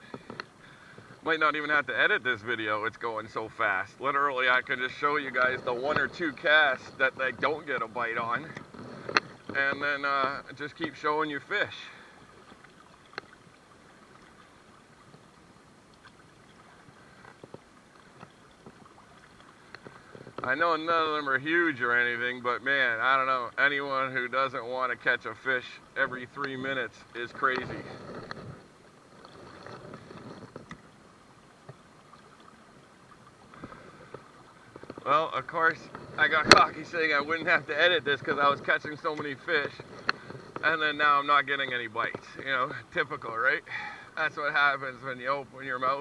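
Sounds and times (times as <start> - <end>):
river water flowing: 0.0 - 46.0
faint clicks: 15.1 - 20.6.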